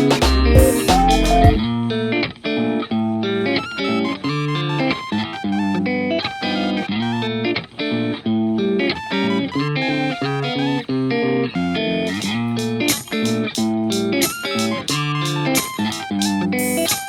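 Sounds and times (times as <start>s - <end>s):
bass line: 0.0s - 1.9s
guitar instrumental music: 0.0s - 17.0s.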